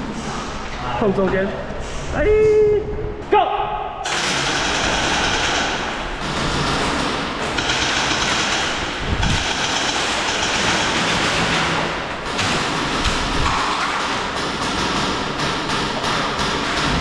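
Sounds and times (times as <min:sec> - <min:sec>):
steady rushing noise: 0:04.0 - 0:15.8.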